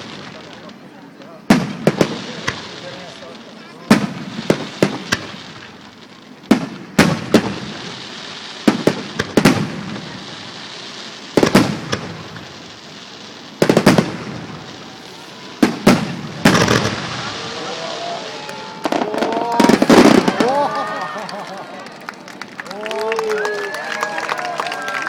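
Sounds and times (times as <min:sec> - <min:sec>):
fireworks bursting with bangs: 0:00.0 - 0:22.6.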